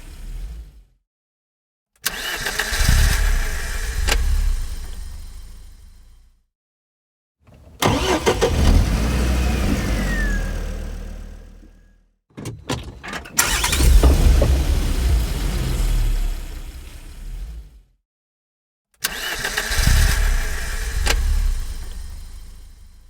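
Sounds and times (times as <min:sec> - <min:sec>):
car starter cranking engine: 0:02.1 - 0:04.7, 0:07.5 - 0:11.8, 0:12.4 - 0:17.2, 0:19.0 - 0:22.6.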